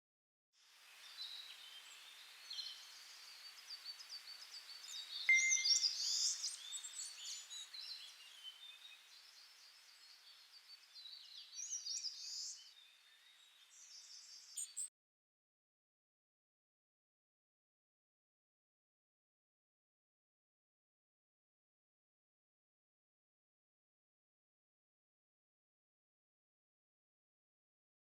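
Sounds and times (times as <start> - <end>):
faint outdoor hiss: 0.6 - 14.9
small birds chirping: 0.9 - 14.9.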